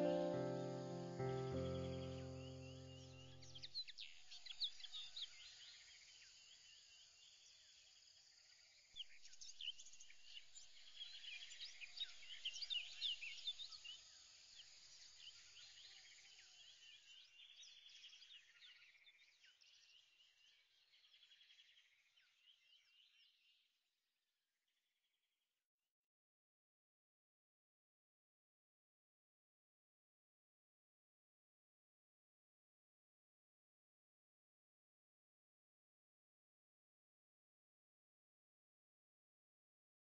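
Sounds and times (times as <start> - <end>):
small birds chirping: 0.0 - 8.0, 9.0 - 23.5.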